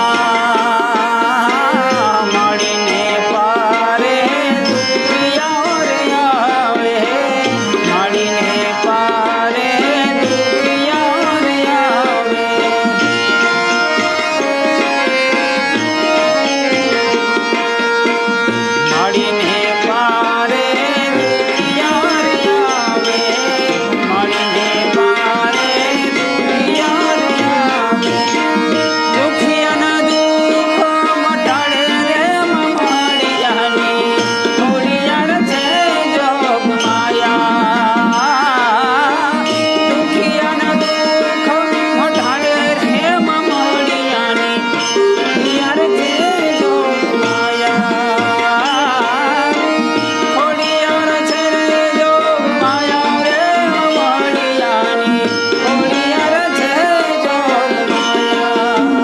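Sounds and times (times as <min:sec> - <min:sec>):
sustained melodic accompaniment: 0:00.0 - 0:59.0
tabla playing a steady rhythm: 0:00.0 - 0:59.0.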